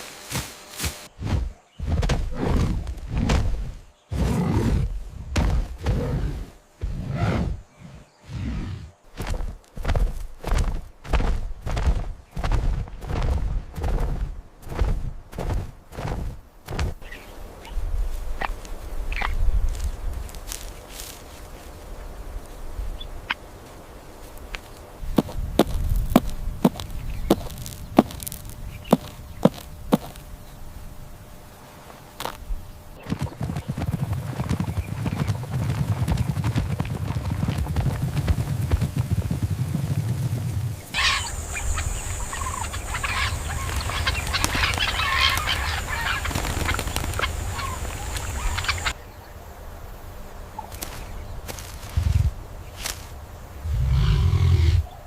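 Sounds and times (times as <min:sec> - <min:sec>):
steady high whine: 0:00.0 - 0:34.8
hooves clopping on hard ground: 0:09.1 - 0:17.2, 0:23.3 - 0:30.3, 0:32.2 - 0:41.2, 0:42.2 - 0:49.0
chickens clucking: 0:41.0 - 0:49.0.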